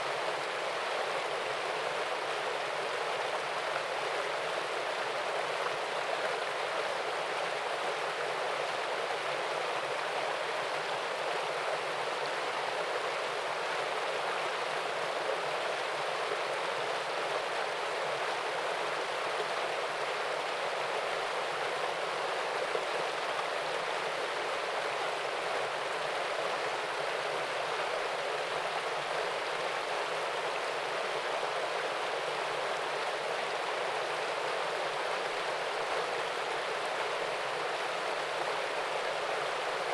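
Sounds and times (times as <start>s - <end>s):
waterfall and stream rushing: 0.0s - 39.9s.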